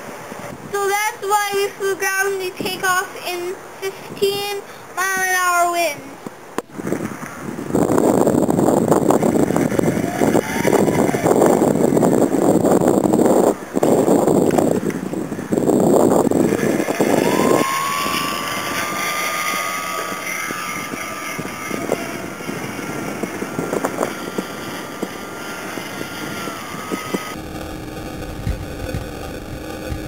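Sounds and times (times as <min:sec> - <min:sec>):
wind buffeting microphone: 0:00.0 - 0:30.0
model plane motor whining: 0:16.0 - 0:30.0.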